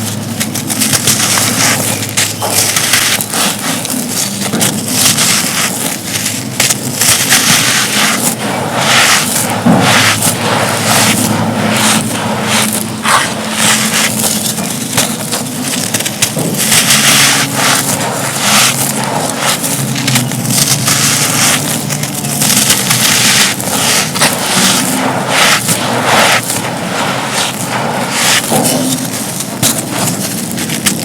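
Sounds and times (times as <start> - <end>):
moulded cups crumbling by hand: 0.0 - 31.0.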